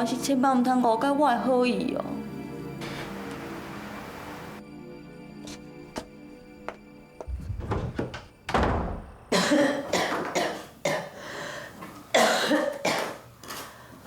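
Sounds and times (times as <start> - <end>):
elderly woman coughing hard: 9.3 - 11.2, 12.1 - 13.3.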